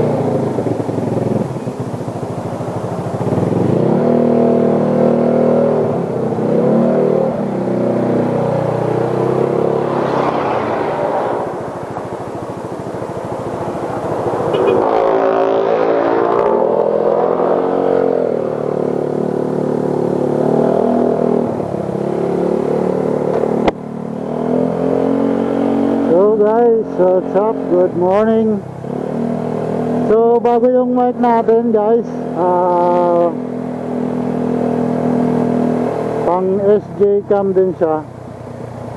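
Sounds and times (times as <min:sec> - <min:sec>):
motorcycle engine running: 0:00.0 - 0:10.0, 0:10.7 - 0:15.6, 0:16.6 - 0:38.9.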